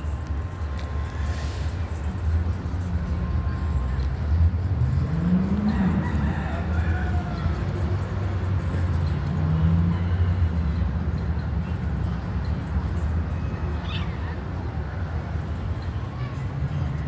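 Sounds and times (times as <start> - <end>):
vehicle engines rumbling: 0.0 - 17.0
rooster crowing: 5.6 - 7.7.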